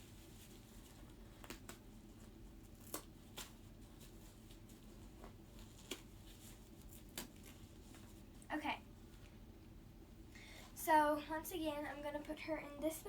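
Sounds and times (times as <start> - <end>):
light rustles of diaper: 0.0 - 9.3
low room hum: 0.0 - 13.0.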